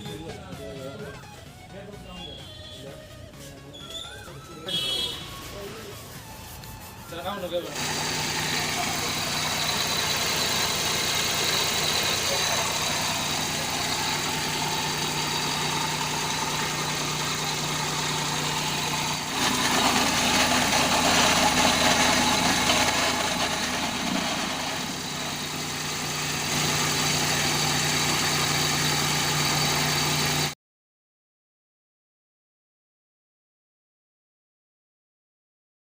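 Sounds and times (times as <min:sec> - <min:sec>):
car engine idling: 0:07.7 - 0:30.5.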